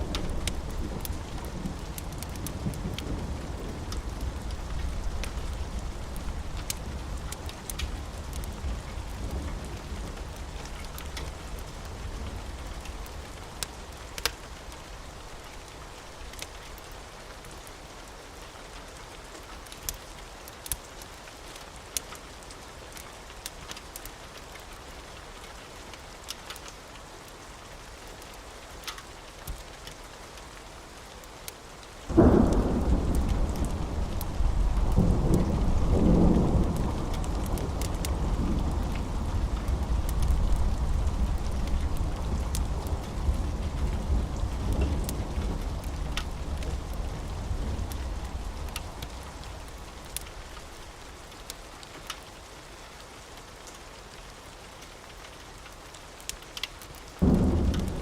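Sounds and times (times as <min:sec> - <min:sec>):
thunder rumbling: 0:00.0 - 0:13.5, 0:32.1 - 0:50.6, 0:57.2 - 0:58.0
steady rain falling: 0:00.0 - 0:58.0.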